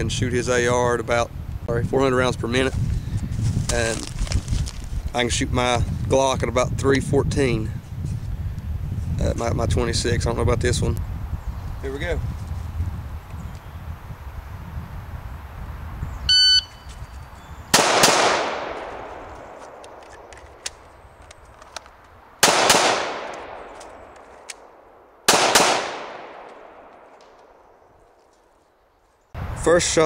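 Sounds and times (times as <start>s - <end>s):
shot timer beep: 16.3s - 16.9s
pistol shots echoing: 17.7s - 20.8s, 22.4s - 27.8s
magazine reload clicks: 17.8s - 24.7s.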